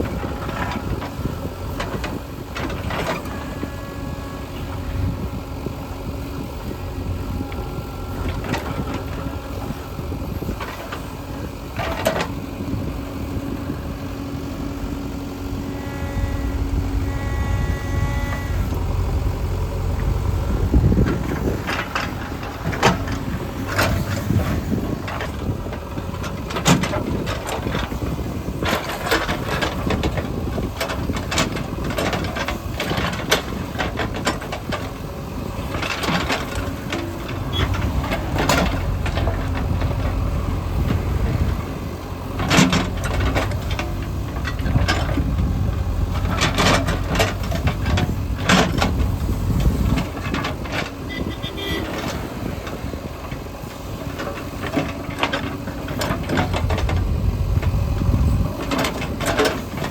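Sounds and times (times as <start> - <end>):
diesel machinery engines running: 0.0 - 59.9
metal clanks and knocks: 20.7 - 35.0, 35.6 - 41.0, 42.3 - 53.4, 54.0 - 59.9.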